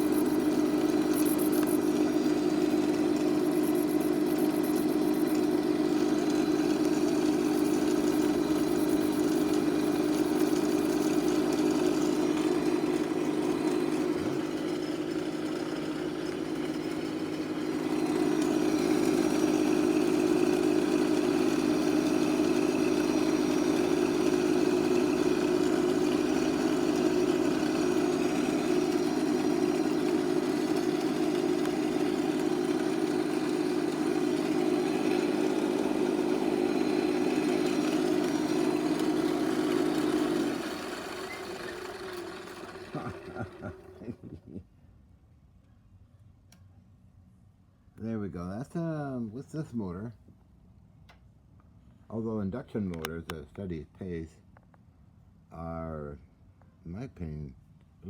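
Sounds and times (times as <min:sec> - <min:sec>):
lathe motor humming: 0:00.0 - 0:44.3.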